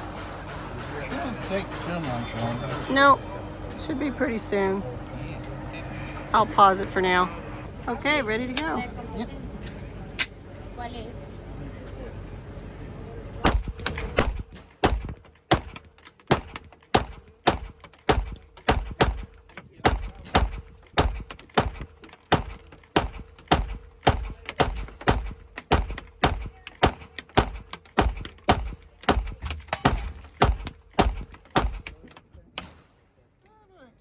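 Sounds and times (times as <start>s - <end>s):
gunshots: 13.4s - 32.0s.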